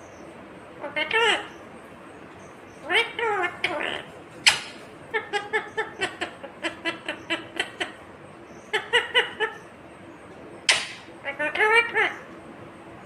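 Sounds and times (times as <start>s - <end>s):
parrot chattering: 0.8s - 1.6s, 2.8s - 9.8s, 10.6s - 12.3s.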